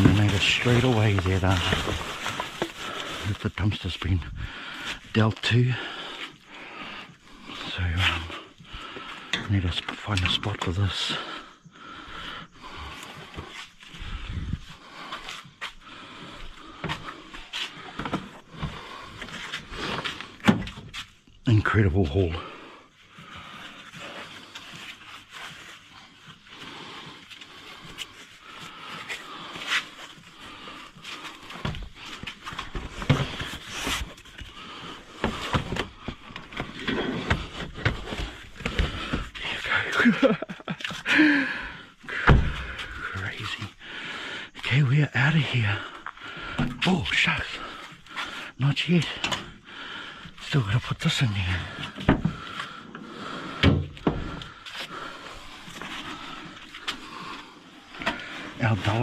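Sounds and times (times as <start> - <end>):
gear rustling: 0.0 - 3.5.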